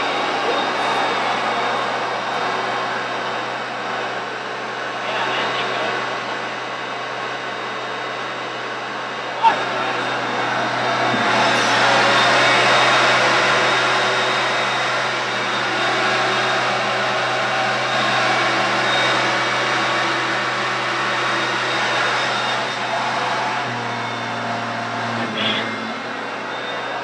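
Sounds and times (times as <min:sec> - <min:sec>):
upright vacuum cleaner running: 0:09.3 - 0:26.6.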